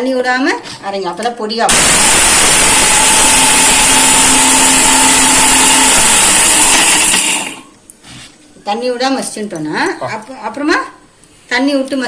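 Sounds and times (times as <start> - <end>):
mixer grinder motor whine: 1.7 - 7.7.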